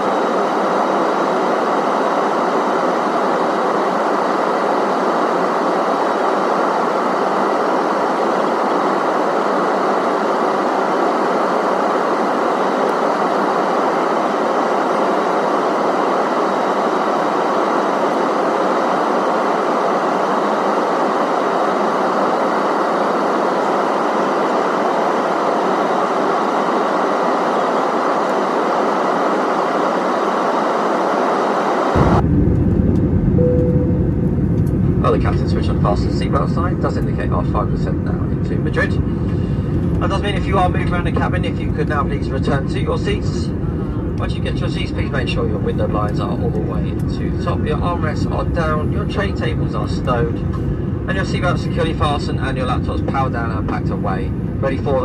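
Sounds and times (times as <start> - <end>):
airliner cabin noise: 0.0 - 55.0
short single tone: 33.4 - 34.4.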